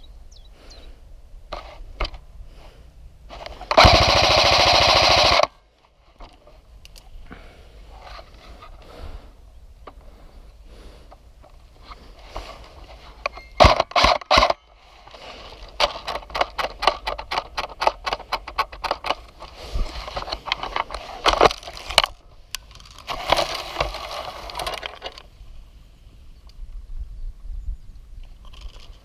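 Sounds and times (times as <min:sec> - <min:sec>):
crunching through dry brush: 0:03.3 - 0:09.3, 0:10.1 - 0:25.6
rustling: 0:10.0 - 0:25.7.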